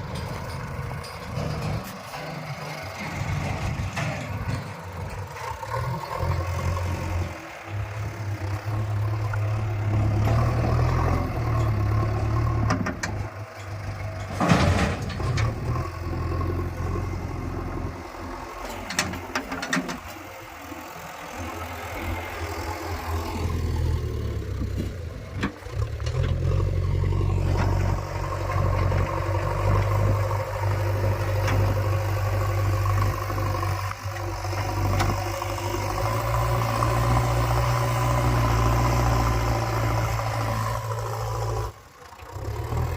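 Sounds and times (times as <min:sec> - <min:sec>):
backhoe diesel engine running: 0:00.0 - 0:42.9.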